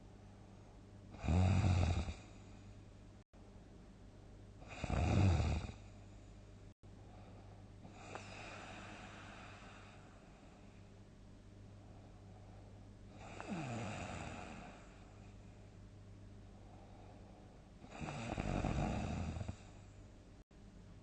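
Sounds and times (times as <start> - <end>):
person snoring loudly: 1.2 - 2.3, 4.6 - 5.8, 13.2 - 14.8, 17.9 - 19.6.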